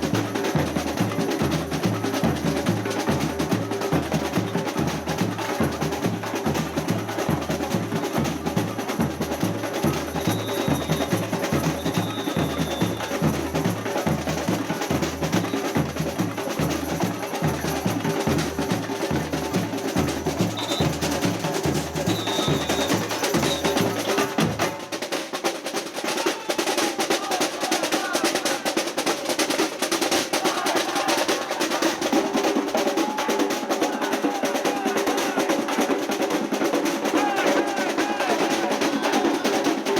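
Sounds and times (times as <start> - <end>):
whistle blasts: 10.1 - 13.4, 15.4 - 15.6, 20.4 - 24.4.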